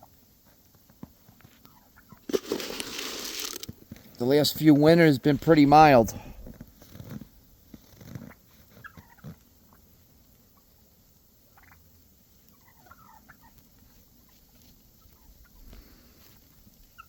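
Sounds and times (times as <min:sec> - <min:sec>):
turkeys clucking and purring: 0:01.4 - 0:02.3, 0:07.8 - 0:17.0.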